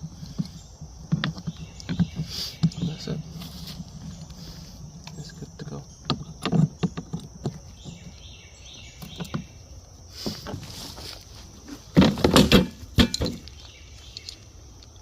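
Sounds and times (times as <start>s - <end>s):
birds chirping faintly: 0.0s - 15.0s
knocks and clatter: 11.8s - 13.5s.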